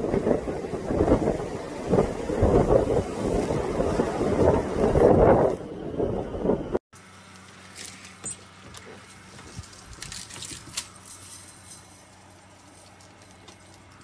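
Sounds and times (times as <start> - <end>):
light metallic jingling: 7.2 - 14.0.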